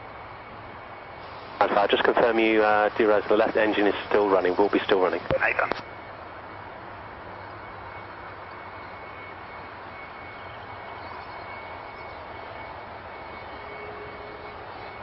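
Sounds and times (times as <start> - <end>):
faint high whine: 0.0 - 15.0
radio channel hiss: 1.2 - 5.9.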